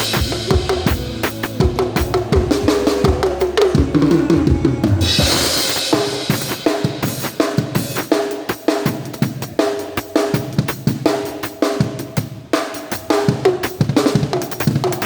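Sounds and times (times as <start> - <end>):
tom drum hits: 0.0 - 7.4
kick and snare beat: 0.0 - 8.1
cymbal crash: 0.0 - 8.4.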